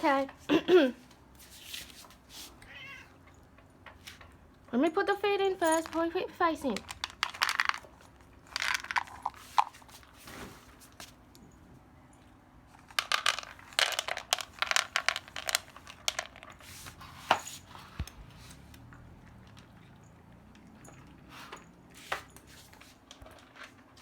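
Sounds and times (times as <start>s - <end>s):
cat food clicks and scrapes: 1.7s - 4.5s, 6.6s - 11.4s, 12.7s - 24.0s.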